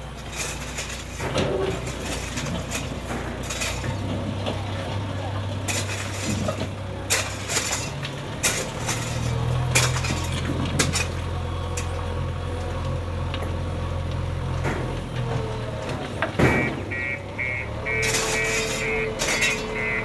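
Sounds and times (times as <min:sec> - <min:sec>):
diesel engine running: 0:00.0 - 0:20.0
metallic clanks: 0:00.2 - 0:12.0, 0:17.9 - 0:20.0.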